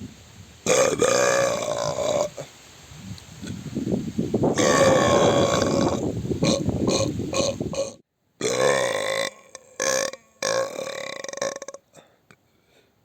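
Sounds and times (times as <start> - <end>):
person burping: 0.7 - 2.4, 4.6 - 12.1.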